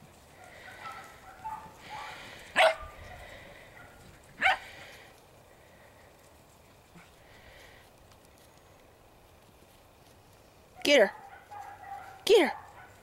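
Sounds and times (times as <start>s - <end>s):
dog barking: 0.4s - 4.7s, 11.1s - 13.0s.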